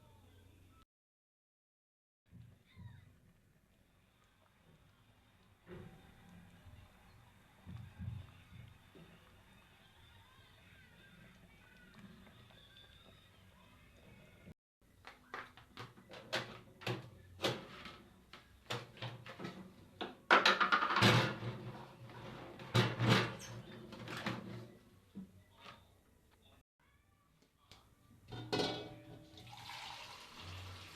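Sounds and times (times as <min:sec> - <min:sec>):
utensils and cookware clattering: 0:16.1 - 0:24.8, 0:28.3 - 0:29.7.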